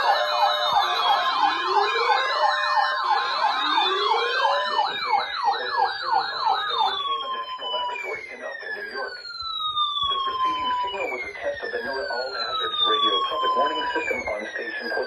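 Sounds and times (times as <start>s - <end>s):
sirens yelping and wailing: 0.0s - 15.0s.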